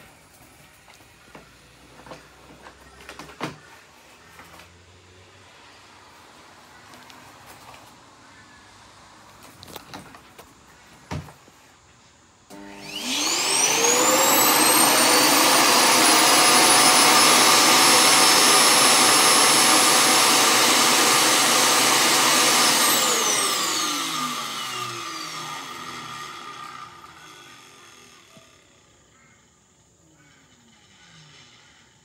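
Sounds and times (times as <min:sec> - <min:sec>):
suction motor whining: 0:12.5 - 0:29.0.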